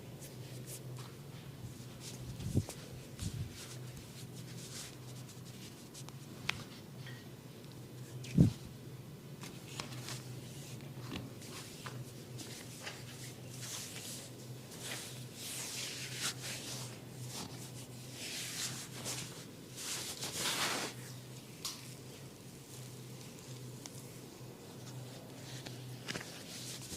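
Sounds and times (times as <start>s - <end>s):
steady low hum: 0.0s - 26.9s
hands rubbing skin and hair: 1.8s - 6.6s, 11.5s - 21.0s.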